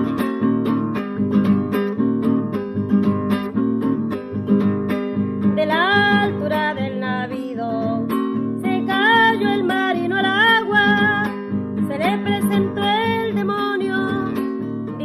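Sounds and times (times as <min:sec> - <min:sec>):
acoustic guitar strumming: 0:00.0 - 0:15.0
person singing: 0:05.6 - 0:11.3.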